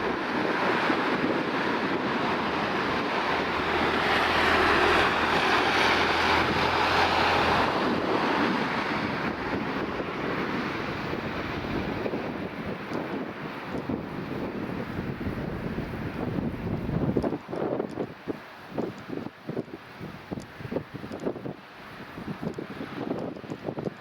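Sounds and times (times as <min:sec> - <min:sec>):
jet engines roaring: 0:00.0 - 0:17.2.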